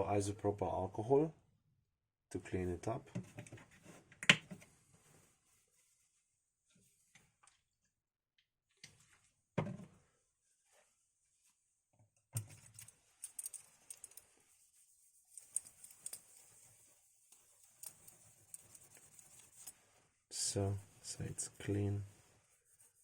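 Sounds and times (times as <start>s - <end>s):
rubbing with small clicks: 12.4s - 20.0s, 20.8s - 23.0s.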